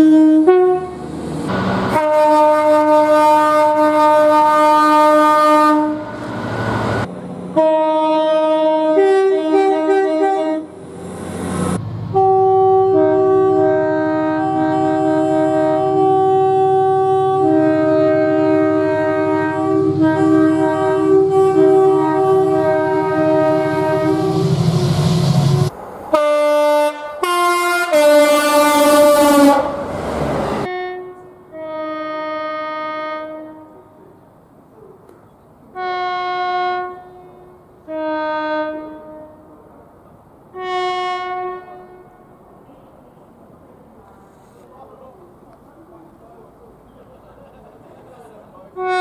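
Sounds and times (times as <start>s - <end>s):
train air horn blasts: 0.0s - 6.4s, 7.6s - 10.8s, 11.7s - 29.9s, 30.6s - 34.1s, 35.7s - 39.7s, 40.5s - 42.4s, 48.8s - 49.0s
train rumble: 0.2s - 31.6s.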